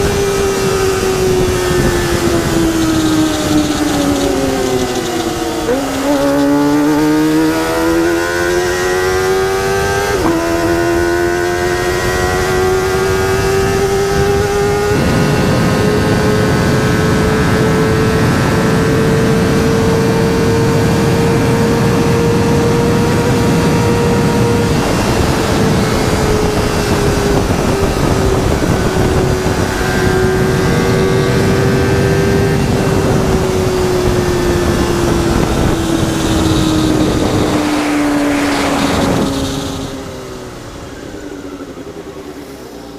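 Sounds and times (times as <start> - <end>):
wind rush: 0.0 - 42.2
motorcycle engine revving: 0.0 - 42.9.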